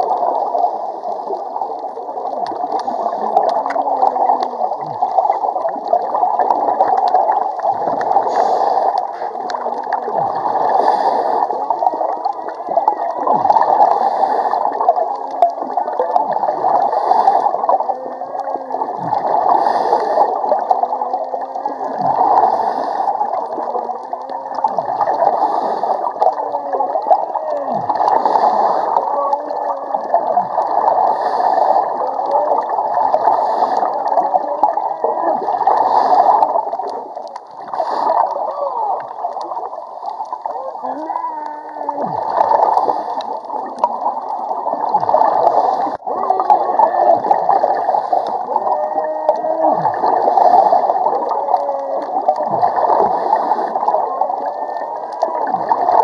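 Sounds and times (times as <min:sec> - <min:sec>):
exhaled bubbles gurgling: 0:00.0 - 0:56.0
diver breathing through regulator: 0:07.0 - 0:12.2, 0:13.5 - 0:15.2, 0:16.5 - 0:24.1, 0:25.0 - 0:26.5, 0:27.8 - 0:29.2, 0:30.6 - 0:38.5, 0:42.2 - 0:48.7, 0:49.8 - 0:51.4, 0:52.3 - 0:54.1.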